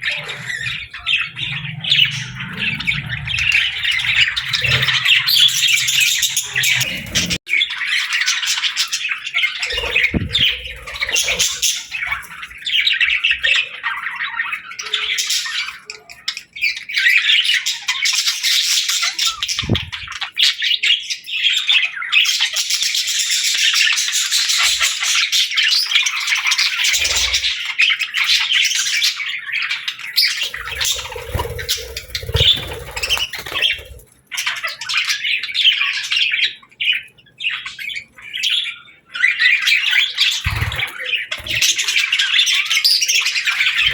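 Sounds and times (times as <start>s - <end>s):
budgerigars chattering and chirping: 0.0s - 43.9s.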